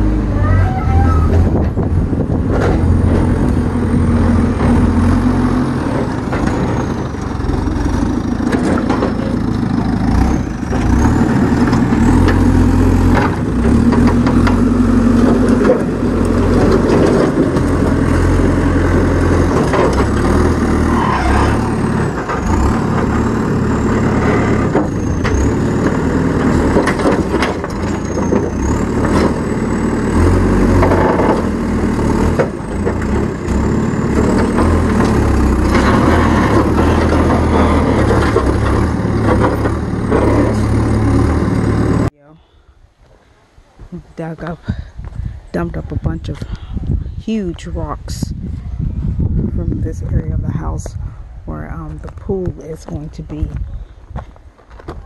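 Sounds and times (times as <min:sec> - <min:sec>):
heavy diesel engine running: 0:00.0 - 0:42.2
knocks and clunks: 0:01.2 - 0:29.6, 0:30.3 - 0:42.1.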